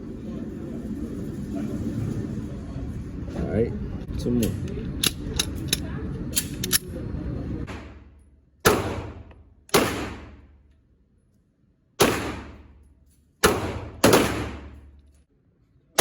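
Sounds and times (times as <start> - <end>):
gunshots echoing: 7.7 - 10.6, 12.0 - 12.7, 13.4 - 14.9.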